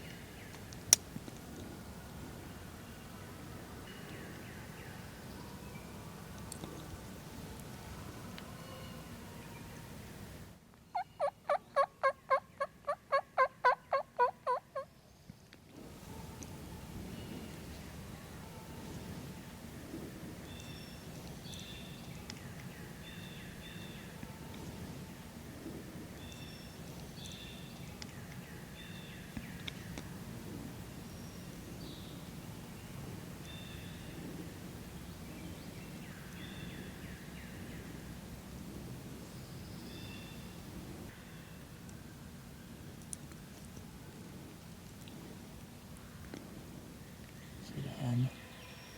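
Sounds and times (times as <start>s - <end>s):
turkey yelping: 11.0s - 14.9s.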